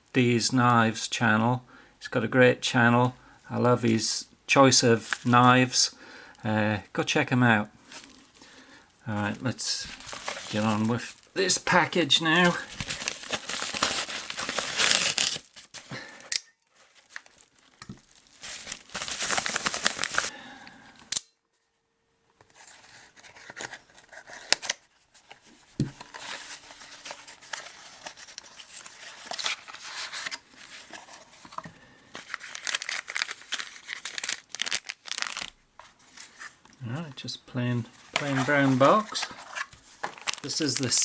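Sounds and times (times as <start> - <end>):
packaging tearing and crinkling: 9.9 - 20.3, 22.6 - 24.8, 26.0 - 31.2, 32.1 - 35.6, 38.1 - 41.0.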